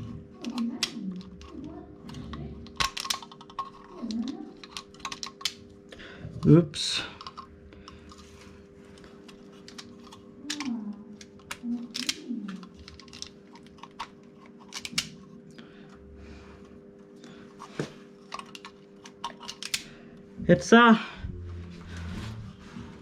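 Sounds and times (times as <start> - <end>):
steady low hum: 0.0 - 23.0
small parts clicking and tapping: 0.4 - 5.6, 6.4 - 8.3, 9.0 - 15.2, 18.2 - 19.9.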